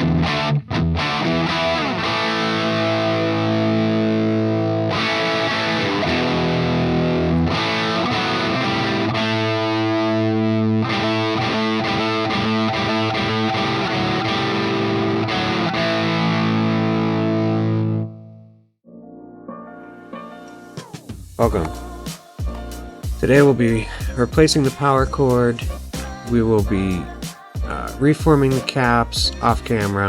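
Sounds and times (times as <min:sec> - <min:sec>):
distorted electric guitar: 0:00.0 - 0:18.3.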